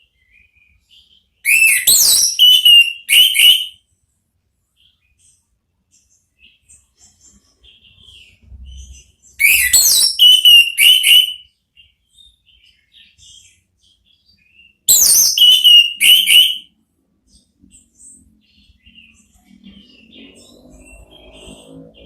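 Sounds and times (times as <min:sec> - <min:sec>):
soft bird twittering: 0:00.0 - 0:03.8, 0:04.8 - 0:22.0
thrush singing whistles: 0:01.4 - 0:03.8, 0:09.4 - 0:11.5, 0:14.7 - 0:16.7.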